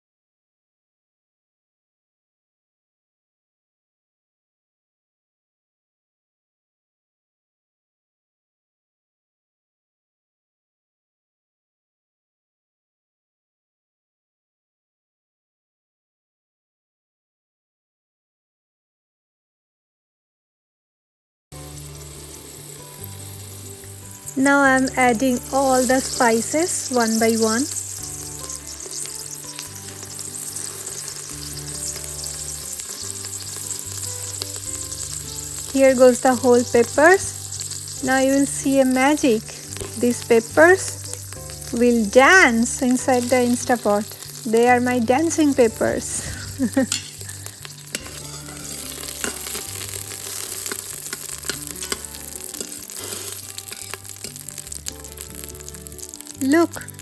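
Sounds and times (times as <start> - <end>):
background music with low notes: 21.5 - 57.0
spices sizzling in hot oil: 21.5 - 57.0
peppercorns popping and crackling: 21.6 - 57.0.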